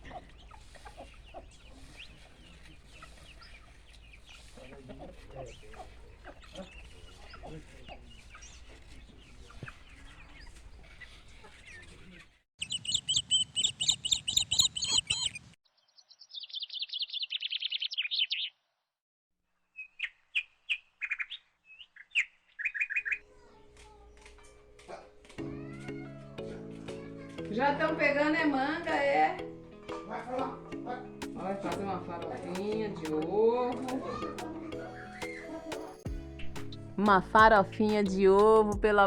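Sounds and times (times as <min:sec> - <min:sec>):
songbirds singing: 0:00.0 - 0:18.6, 0:19.7 - 0:24.8, 0:29.4 - 0:38.4
faint bird chirping: 0:00.0 - 0:18.7, 0:19.6 - 0:24.8, 0:34.1 - 0:36.8.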